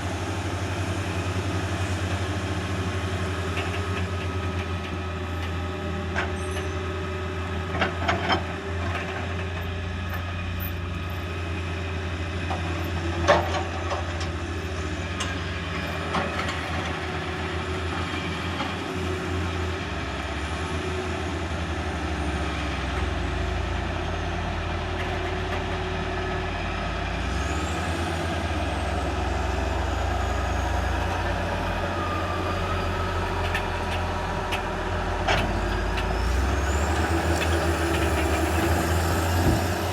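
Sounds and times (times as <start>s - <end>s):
truck engine humming: 0.0s - 6.0s, 23.5s - 39.9s.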